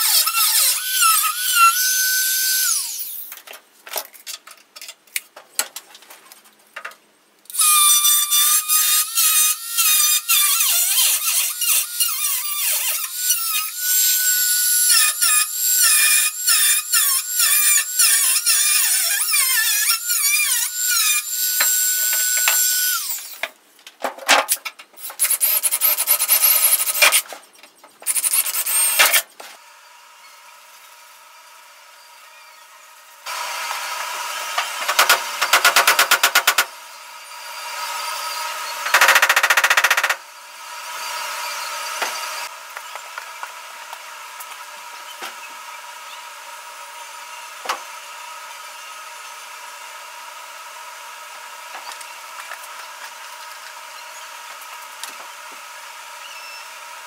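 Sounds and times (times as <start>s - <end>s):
rotary tool cutting sheet metal: 0.0s - 3.4s, 7.5s - 23.5s, 24.5s - 27.4s, 28.0s - 29.3s, 37.6s - 40.2s.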